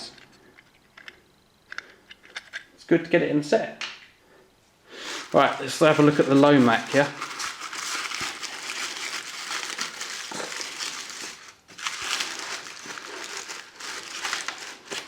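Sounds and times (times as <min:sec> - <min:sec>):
tissue paper crinkling: 0:05.0 - 0:15.0.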